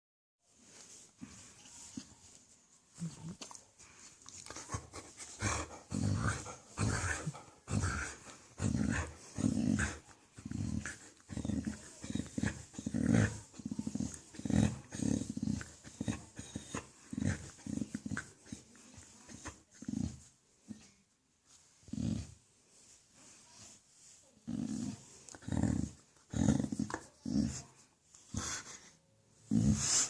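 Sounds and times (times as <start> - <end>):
dog making low vocal noises: 4.6 - 21.0.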